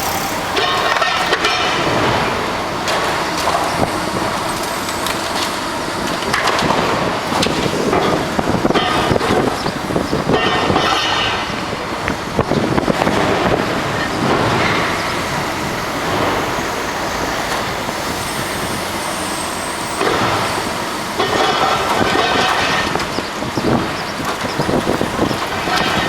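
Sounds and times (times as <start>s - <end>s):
heavy machinery running: 0.0s - 26.0s
debris crunching and clattering: 21.2s - 26.0s.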